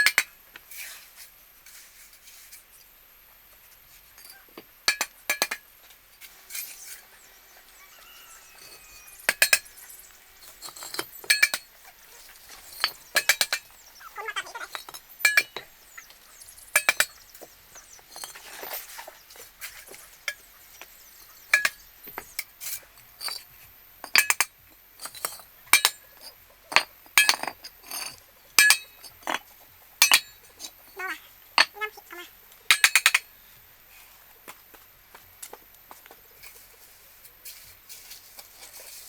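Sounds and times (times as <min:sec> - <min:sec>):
hard objects clinking: 0:07.8 - 0:15.8.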